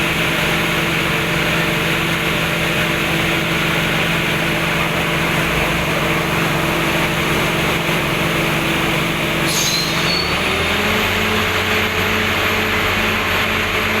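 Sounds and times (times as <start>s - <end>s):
drilling rig engine running: 0.0s - 14.0s
loud hiss: 9.4s - 10.3s.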